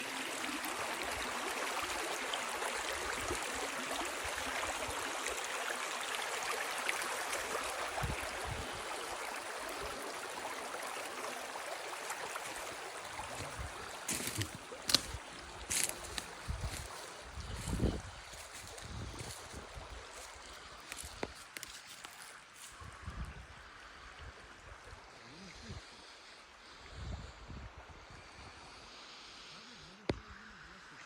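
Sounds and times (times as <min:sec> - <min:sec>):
river flowing: 0:00.0 - 0:22.9.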